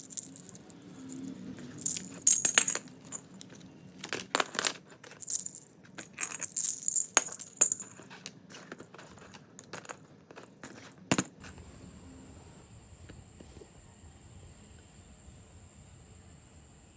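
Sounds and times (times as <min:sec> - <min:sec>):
plastic blocks clicking: 0:00.0 - 0:11.6.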